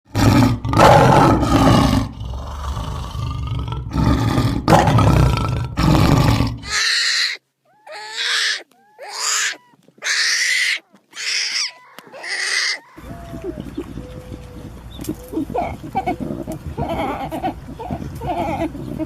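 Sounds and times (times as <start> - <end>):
big cat roaring: 0.1 - 6.9
high-pitched animal calls: 6.6 - 19.0.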